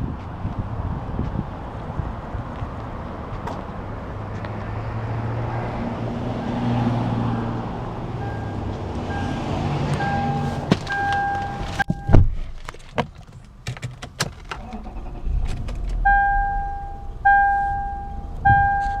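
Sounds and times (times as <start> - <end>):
car warning chime: 8.2 - 9.4, 10.0 - 12.2, 16.0 - 19.0.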